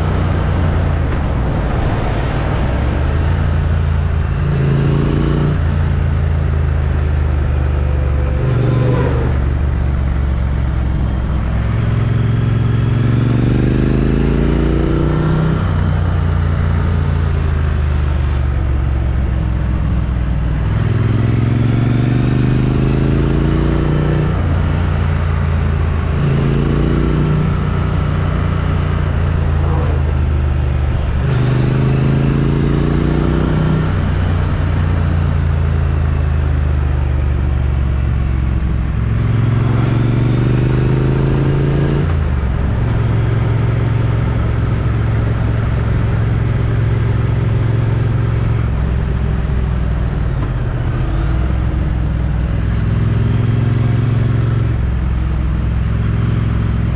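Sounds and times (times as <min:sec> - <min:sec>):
wind noise: 0:00.0 - 0:07.2
motorcycle engine accelerating: 0:00.0 - 0:56.9.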